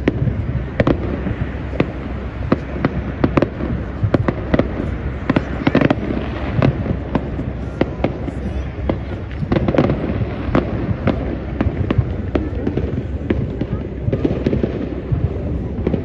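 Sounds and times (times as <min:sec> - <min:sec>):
firework bangs and pops: 0:00.0 - 0:16.0
low rumble of distant fireworks: 0:00.0 - 0:16.0.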